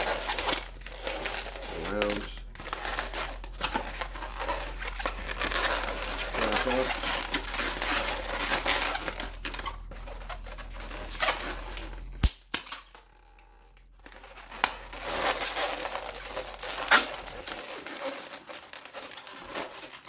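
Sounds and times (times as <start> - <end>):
balloons rubbing: 0.0 - 20.0
balloon snapping: 11.1 - 12.9.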